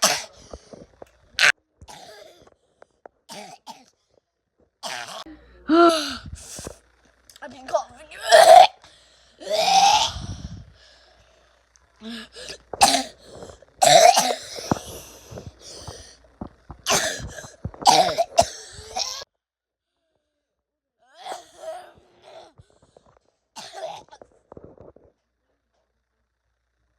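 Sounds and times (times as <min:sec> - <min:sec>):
person coughing: 0:00.0 - 0:00.4, 0:01.4 - 0:02.4, 0:12.3 - 0:16.0, 0:16.9 - 0:19.2, 0:23.6 - 0:24.2.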